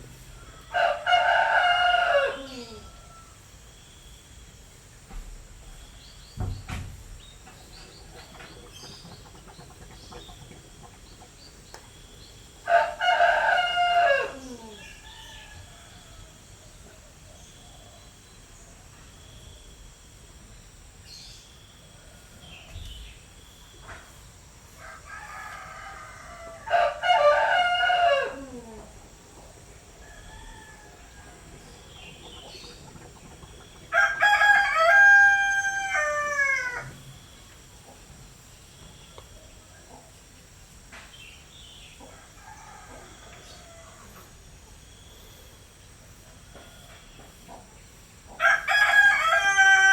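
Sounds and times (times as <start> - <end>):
rooster crowing: 0.2 - 3.5, 12.6 - 16.6, 24.7 - 29.0, 30.0 - 32.6, 33.8 - 37.0, 42.0 - 44.4, 48.3 - 49.9.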